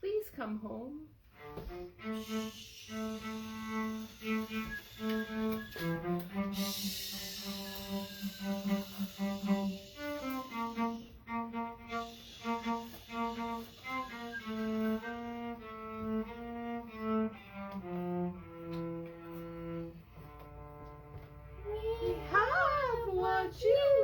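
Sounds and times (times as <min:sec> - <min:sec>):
solo cello melody: 0:01.2 - 0:24.0.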